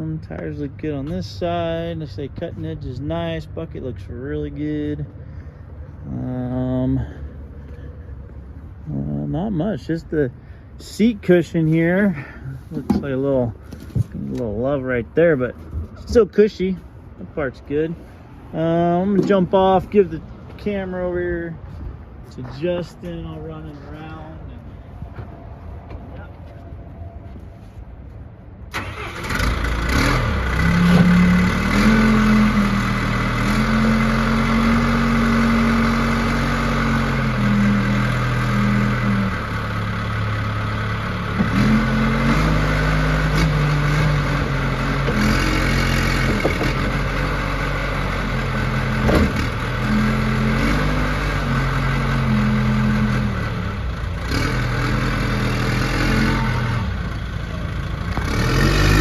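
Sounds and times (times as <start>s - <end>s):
backhoe diesel engine revving: 28.7s - 59.0s.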